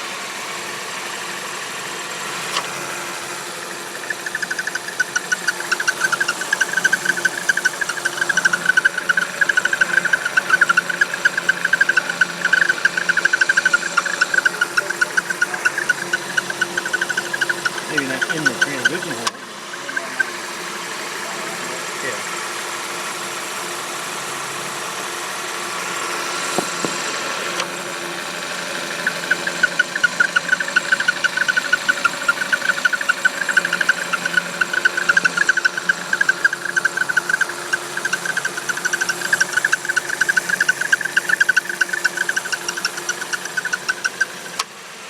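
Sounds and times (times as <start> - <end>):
car engine running: 0.0 - 45.0
rapid high squeaking chirp: 3.5 - 20.7, 28.7 - 44.6.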